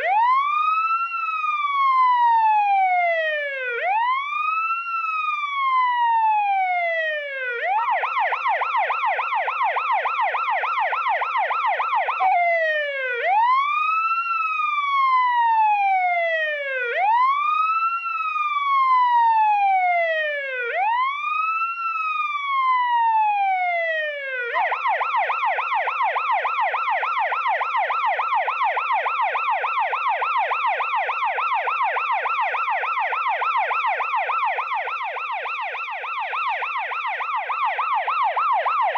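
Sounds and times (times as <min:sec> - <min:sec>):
electronic siren wailing and yelping: 0:24.5 - 0:38.9.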